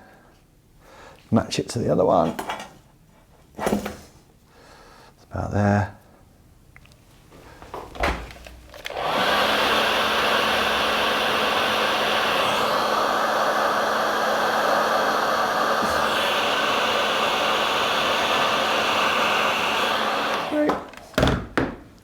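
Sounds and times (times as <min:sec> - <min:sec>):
heat gun blowing: 0:08.7 - 0:21.2.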